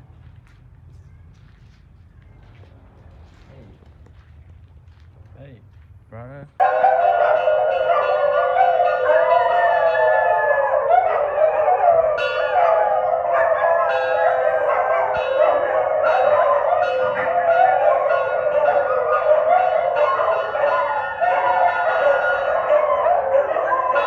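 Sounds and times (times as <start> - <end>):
dog howling: 6.6 - 24.0.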